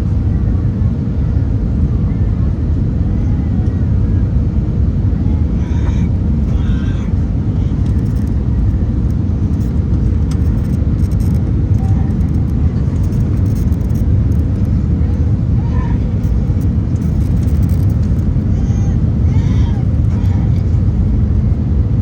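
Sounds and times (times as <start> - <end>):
airliner taxiing rumble: 0.0 - 22.0
faint voices: 4.8 - 21.4.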